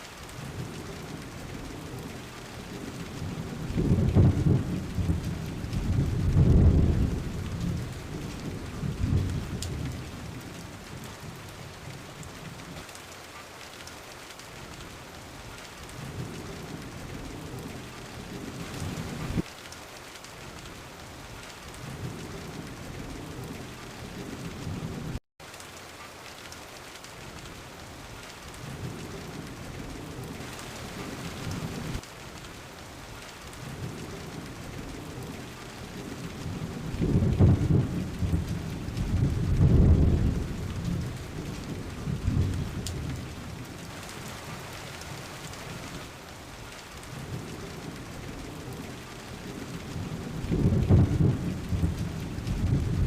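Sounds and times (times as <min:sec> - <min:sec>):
steady rain: 0:00.0 - 0:53.0
rolling thunder: 0:00.4 - 0:12.6, 0:33.6 - 0:45.2, 0:47.1 - 0:53.0.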